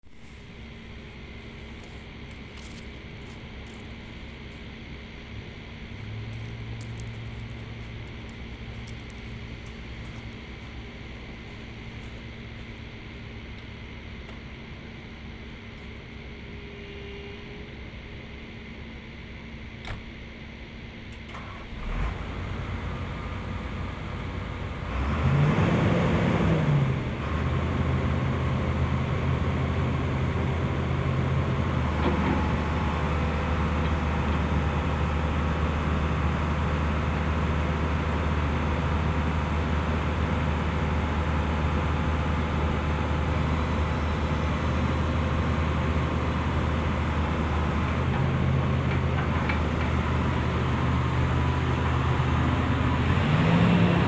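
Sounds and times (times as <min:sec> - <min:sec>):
excavator diesel engine running: 0:21.0 - 0:54.0.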